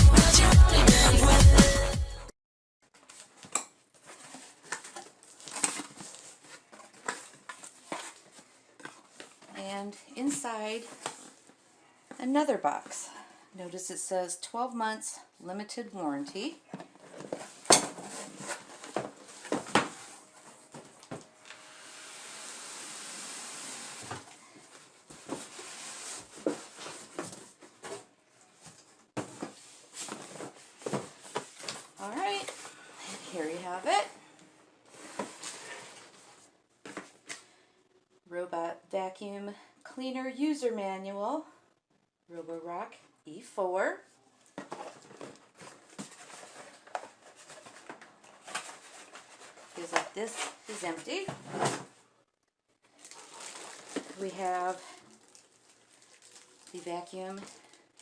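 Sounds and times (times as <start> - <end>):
electronic music: 0.0 - 2.3
cardboard box rustling and knocks: 16.8 - 20.0, 29.2 - 31.9.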